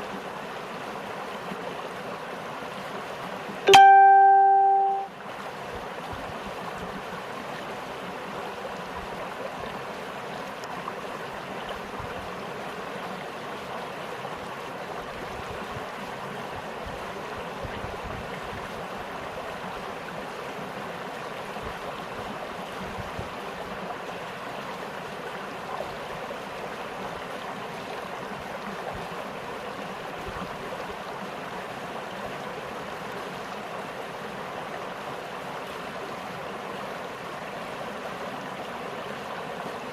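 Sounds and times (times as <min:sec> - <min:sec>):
stream babbling: 0:00.0 - 0:39.9.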